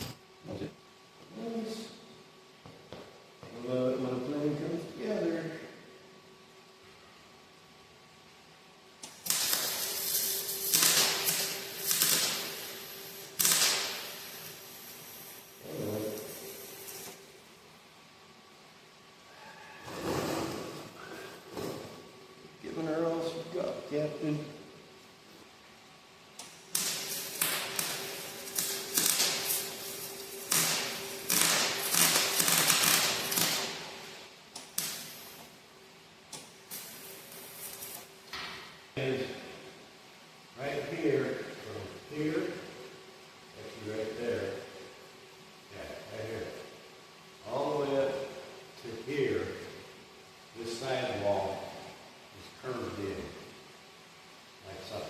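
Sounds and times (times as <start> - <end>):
faint steady hum: 0.0 - 55.0
welding crackling hiss: 9.0 - 17.4, 26.4 - 35.6, 36.3 - 38.8.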